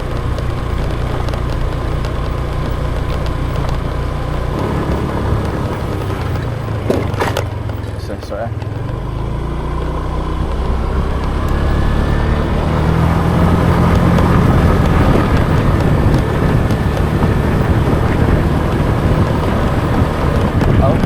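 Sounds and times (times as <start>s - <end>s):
motorbike engine running: 0.0s - 21.0s
wind rumbling on microphone: 0.0s - 21.0s.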